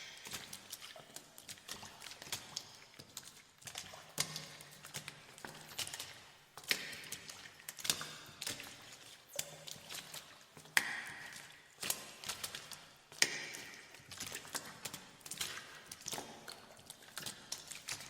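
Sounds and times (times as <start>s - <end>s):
footsteps splashing through water: 0.0s - 18.0s.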